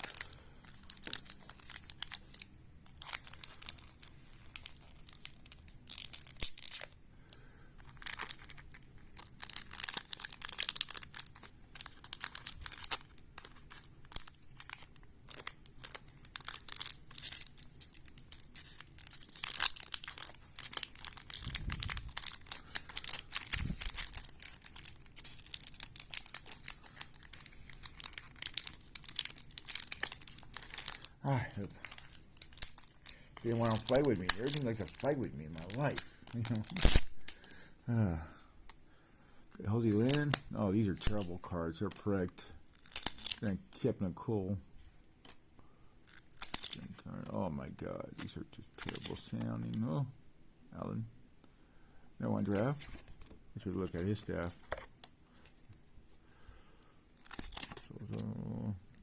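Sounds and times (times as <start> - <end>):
plastic wrappers crinkling and tearing: 0.0 - 38.1, 39.6 - 43.5, 46.1 - 47.4, 48.0 - 49.9, 52.2 - 55.7, 57.2 - 59.0.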